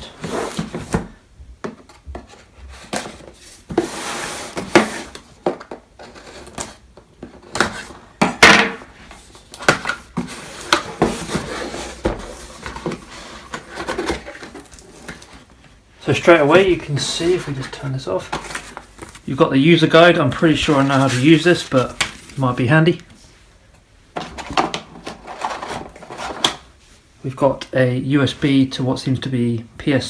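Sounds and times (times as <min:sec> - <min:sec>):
box being handled: 0:09.1 - 0:19.4, 0:20.3 - 0:22.5.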